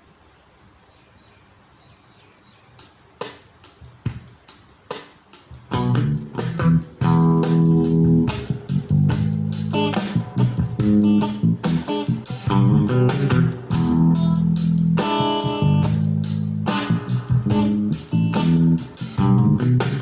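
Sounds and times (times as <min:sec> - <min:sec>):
guitar music through amplifier: 0:05.5 - 0:20.0.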